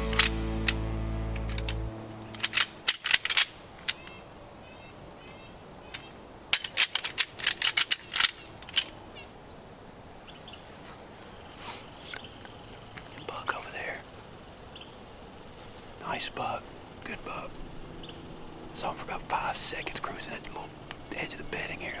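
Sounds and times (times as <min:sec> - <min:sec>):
music: 0:00.0 - 0:02.3
sharp irregular clicks and cracks: 0:00.0 - 0:04.2, 0:05.9 - 0:09.0
faint bird-like chirps: 0:03.9 - 0:06.2, 0:10.2 - 0:22.0.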